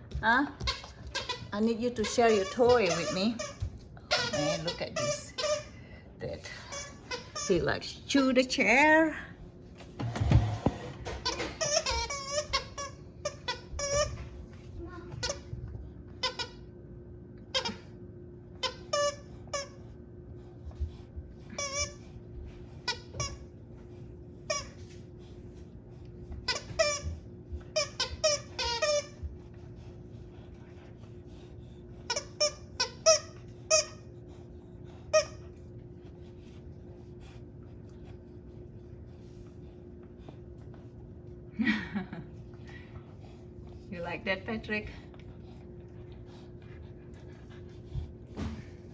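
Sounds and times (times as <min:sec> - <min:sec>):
squeaky dog toy squeaking: 0:00.7 - 0:05.7, 0:06.7 - 0:07.8, 0:11.2 - 0:14.2.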